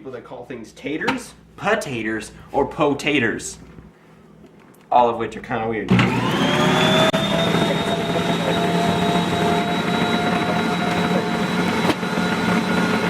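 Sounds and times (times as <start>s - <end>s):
food processor motor whining: 5.9s - 13.0s.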